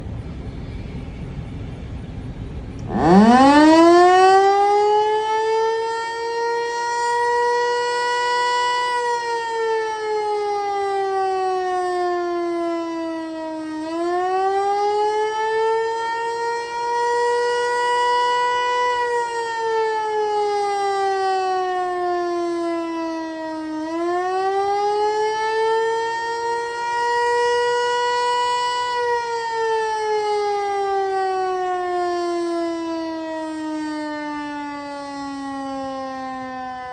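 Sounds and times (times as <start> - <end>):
low background rumble: 0.0 - 2.9
outdoor warning siren wailing: 0.0 - 36.9.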